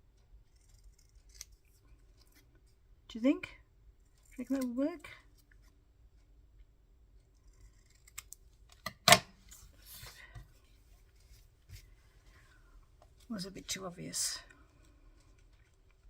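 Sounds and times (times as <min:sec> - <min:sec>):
scissors snipping paper: 0:00.5 - 0:02.5.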